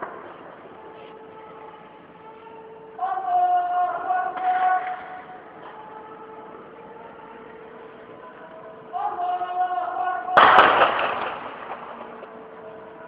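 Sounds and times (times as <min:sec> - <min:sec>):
steady hum: 0:00.0 - 0:13.0
gunshot blast echoing: 0:10.4 - 0:12.0.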